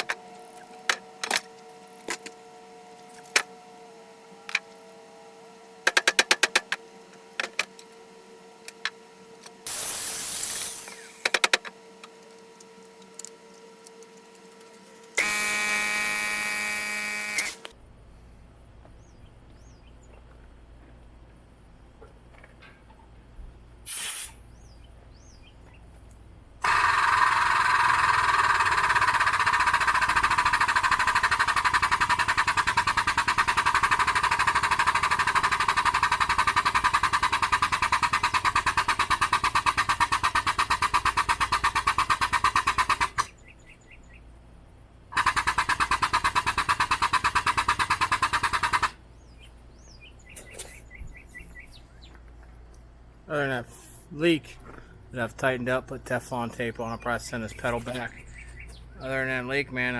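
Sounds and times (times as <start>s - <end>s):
hydraulic press pump chattering: 26.6s - 43.3s, 45.2s - 49.0s.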